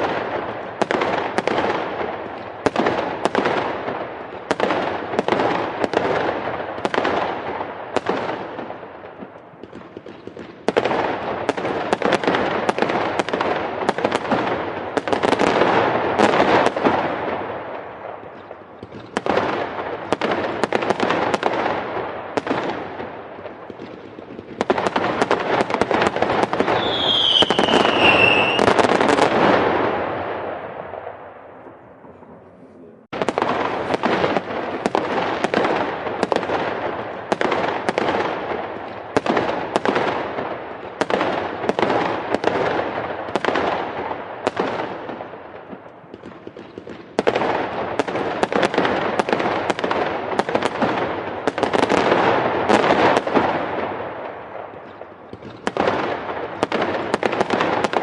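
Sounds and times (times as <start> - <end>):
fireworks bangs and crackles: 0.0 - 58.0
firework whistle falling in pitch: 26.8 - 28.7.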